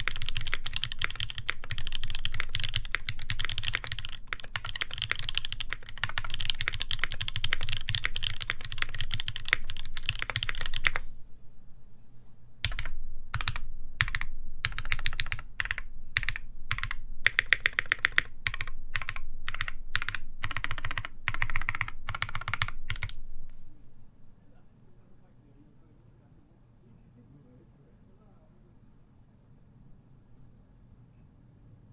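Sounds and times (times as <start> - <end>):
mechanical keyboard typing: 0.0 - 11.1, 12.6 - 23.2.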